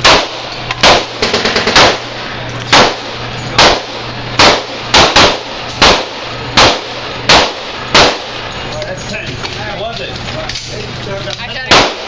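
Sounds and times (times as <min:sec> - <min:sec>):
handgun shots: 0:00.0 - 0:02.0, 0:02.7 - 0:08.4, 0:11.7 - 0:12.0
steady low hum: 0:00.0 - 0:12.0.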